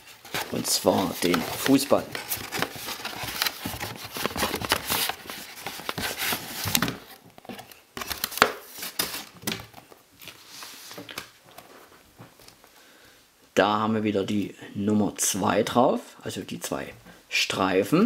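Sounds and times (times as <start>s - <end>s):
packaging crinkling: 0.0s - 9.6s.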